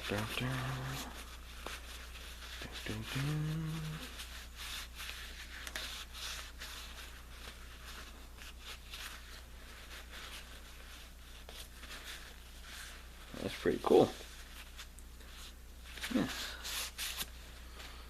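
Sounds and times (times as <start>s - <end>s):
person humming: 0.0s - 1.3s, 2.7s - 4.2s, 16.0s - 16.6s.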